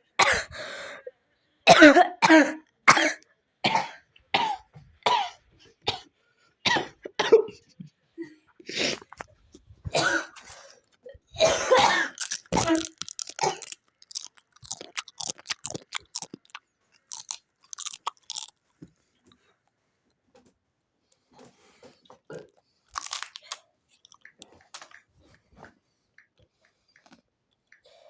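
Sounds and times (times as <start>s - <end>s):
person coughing: 0.2s - 0.9s, 1.7s - 6.0s, 6.7s - 7.6s, 9.9s - 10.4s, 11.4s - 13.7s
crunching and chewing: 12.0s - 19.2s, 22.3s - 25.4s.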